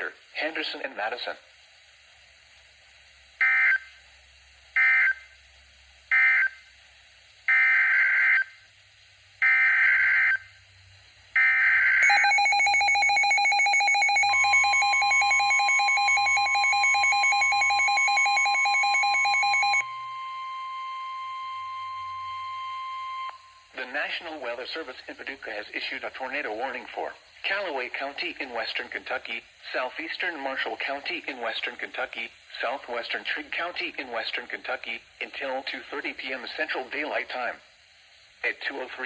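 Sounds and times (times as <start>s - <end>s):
steady warning alarm tone: 11.4s - 23.8s
rapid electronic beeping alarm: 12.0s - 20.7s
data bursts: 12.0s - 23.8s.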